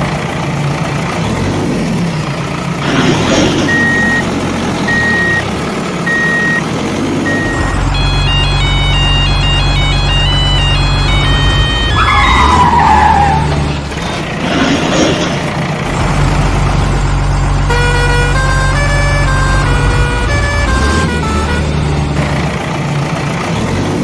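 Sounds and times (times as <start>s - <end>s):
vehicle engine rumble: 0.0s - 24.0s
plinking melody: 7.3s - 12.4s.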